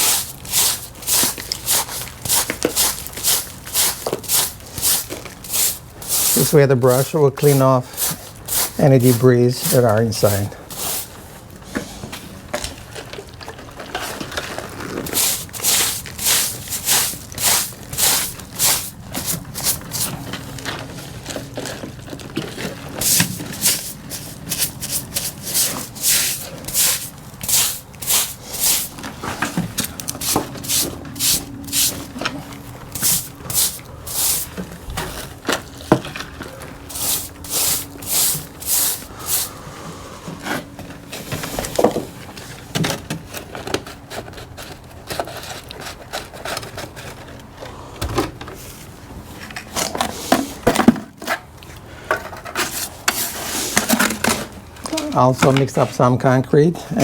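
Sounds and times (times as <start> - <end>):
stiff brush scrubbing concrete: 0.0 - 11.3, 14.0 - 20.4, 22.9 - 35.8, 36.7 - 39.8, 52.6 - 53.9.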